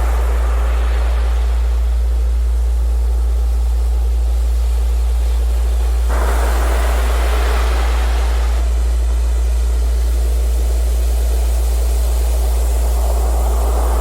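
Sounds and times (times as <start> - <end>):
waves breaking: 0.0 - 2.2, 6.1 - 8.9.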